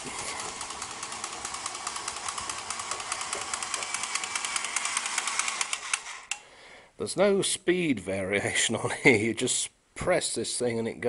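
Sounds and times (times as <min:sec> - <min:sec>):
toy train motor whirring and clicking: 0:00.0 - 0:06.5.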